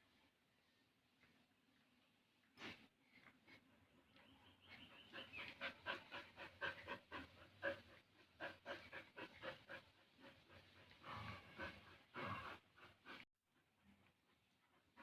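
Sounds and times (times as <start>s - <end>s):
dog panting: 4.7s - 15.0s.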